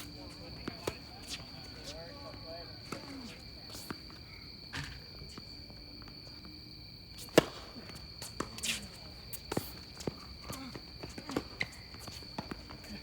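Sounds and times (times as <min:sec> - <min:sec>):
tennis ball impact: 0:07.3 - 0:08.8.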